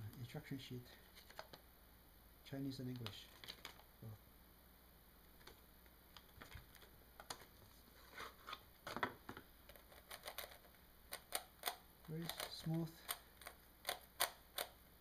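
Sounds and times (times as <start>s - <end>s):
puzzle cube layers clicking: 9.8s - 14.8s.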